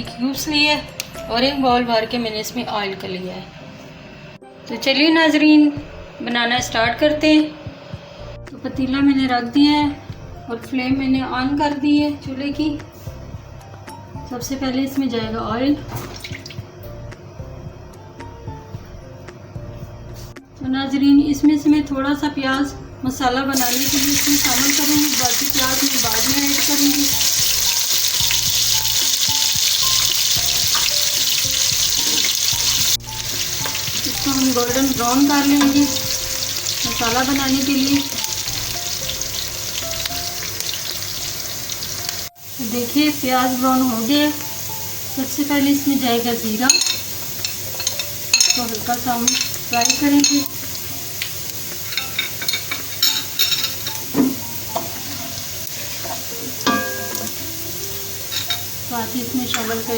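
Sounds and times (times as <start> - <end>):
background music: 0.0 - 59.9
onion sizzling in hot oil: 23.5 - 59.9
spoon scraping and clinking pot: 23.6 - 34.4, 46.7 - 50.6, 51.8 - 54.1, 56.0 - 57.4, 58.3 - 58.7.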